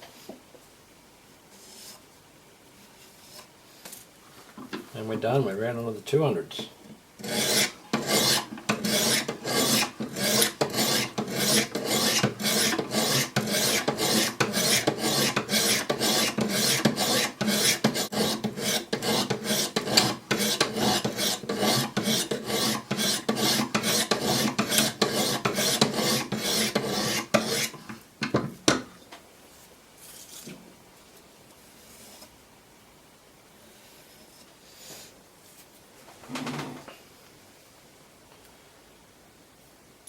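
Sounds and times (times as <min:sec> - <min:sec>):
sharpening stone rasping on knife blade: 0:07.2 - 0:27.8.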